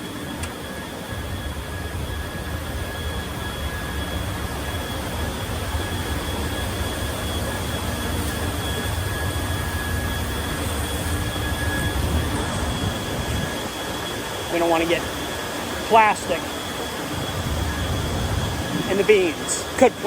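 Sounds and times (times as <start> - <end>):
faint steady whine: 0.0 - 20.0.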